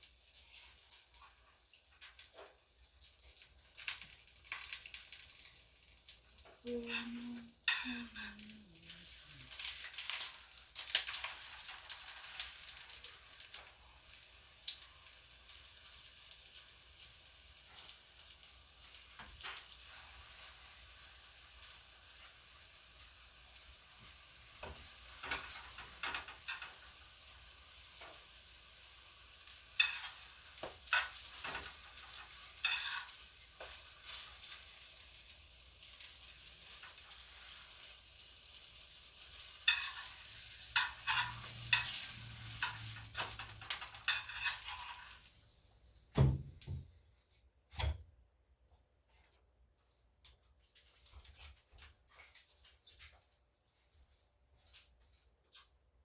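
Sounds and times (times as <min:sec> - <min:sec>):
batter frying in a pan: 0:00.0 - 0:56.0
utensil scraping a pan: 0:30.9 - 0:33.2, 0:39.6 - 0:45.3.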